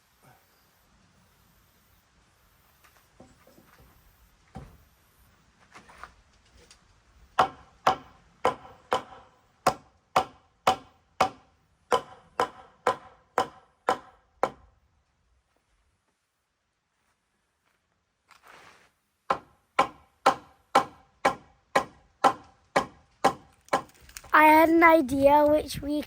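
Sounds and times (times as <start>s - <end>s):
hammer striking timber: 7.4s - 14.7s, 19.3s - 24.0s.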